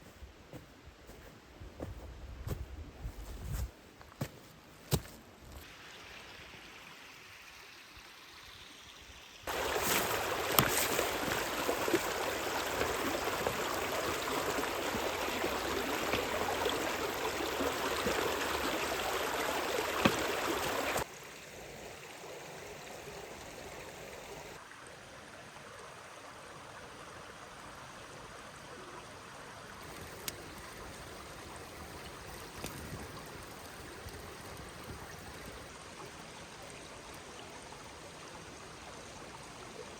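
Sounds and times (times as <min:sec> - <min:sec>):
stream water rushing: 0:09.4 - 0:39.9.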